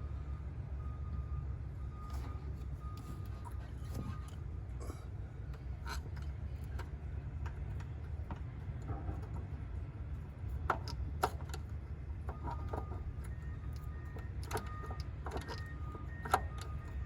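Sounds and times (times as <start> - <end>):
small metal parts clicking: 10.5 - 17.0.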